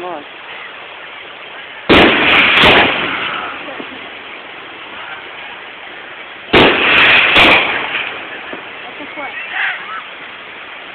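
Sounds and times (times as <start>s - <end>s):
firework shells bursting: 1.8s - 5.4s, 6.4s - 9.3s.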